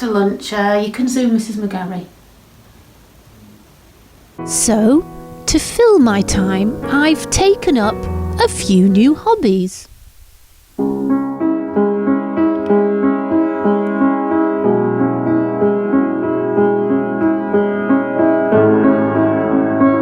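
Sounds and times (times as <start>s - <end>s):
piano music: 4.4s - 20.0s.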